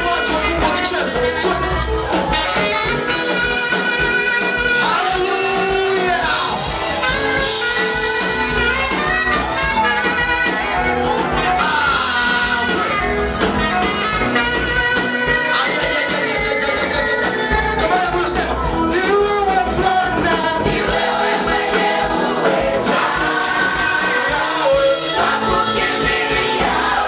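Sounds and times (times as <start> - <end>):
instrumental accompaniment: 0.0 - 27.0
steady percussion beat: 0.0 - 27.0
vocal group singing worship song: 19.7 - 27.0.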